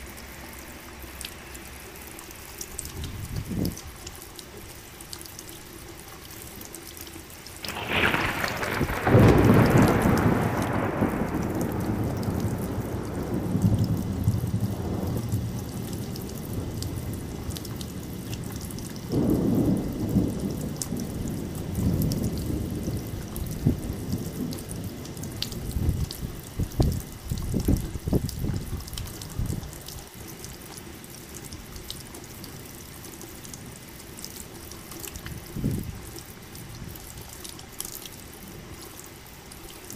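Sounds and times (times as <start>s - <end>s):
steady rain falling: 0.0s - 39.9s
sharp thunder cracks: 7.6s - 15.5s, 19.1s - 24.6s
rolling thunder: 7.6s - 29.7s, 35.3s - 36.0s.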